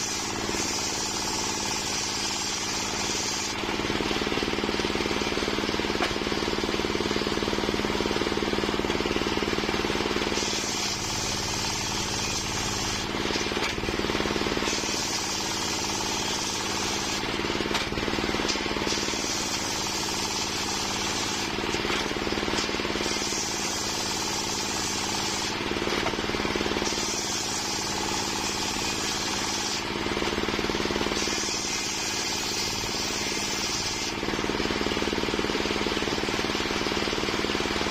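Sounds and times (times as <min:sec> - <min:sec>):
saw blade cutting wood hiss: 0:00.0 - 0:03.6, 0:10.3 - 0:13.5, 0:14.4 - 0:17.3, 0:18.4 - 0:21.6, 0:22.6 - 0:25.6, 0:26.8 - 0:29.9, 0:31.1 - 0:34.2
sawmill engine running: 0:00.0 - 0:37.9.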